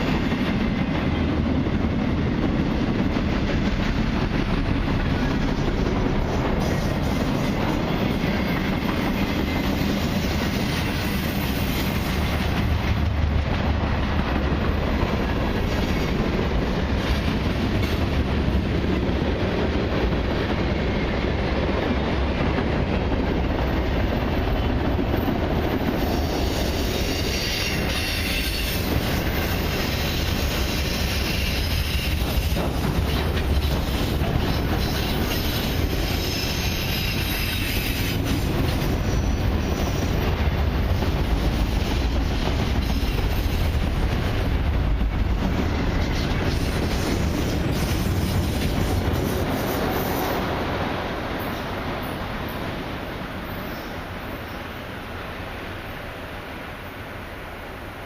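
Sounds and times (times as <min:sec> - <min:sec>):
train wheels clattering over rail: 0:00.0 - 0:52.6
high wheel squeal: 0:26.2 - 0:32.5, 0:34.7 - 0:38.4.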